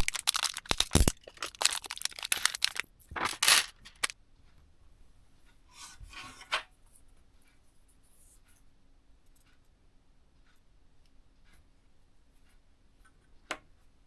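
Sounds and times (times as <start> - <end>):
small hard parts clicking and clinking: 0.0 - 4.1
scrape: 5.7 - 8.6.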